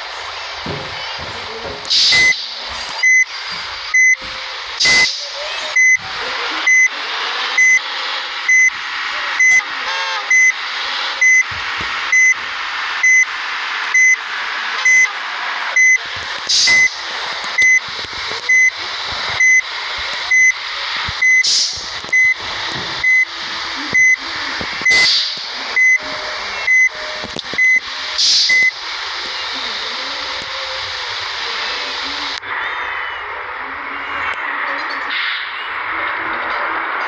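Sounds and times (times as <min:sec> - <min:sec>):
electronic beeper short high beeps: 0:04.0 - 0:04.2, 0:05.7 - 0:06.0, 0:06.7 - 0:06.9, 0:10.3 - 0:10.6, 0:11.2 - 0:11.5, 0:14.0 - 0:14.2.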